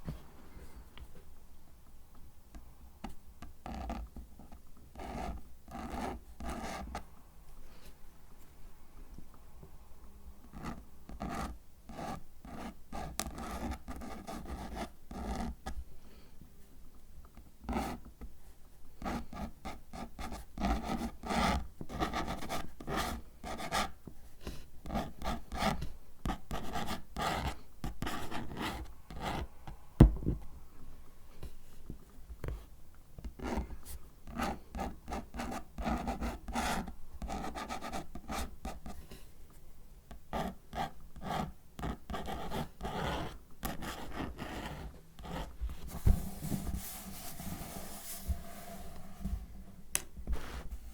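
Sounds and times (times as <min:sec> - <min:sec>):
paper and cardboard scratching: 0:41.8 - 0:49.0.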